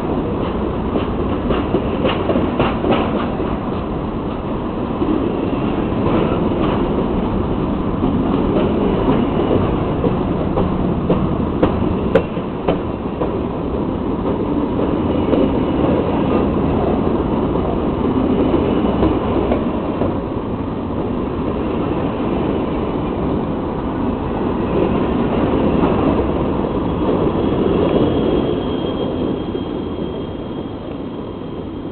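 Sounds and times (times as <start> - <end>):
freight train rumbling past: 0.0 - 31.9
faint high wheel squeal: 26.7 - 31.9.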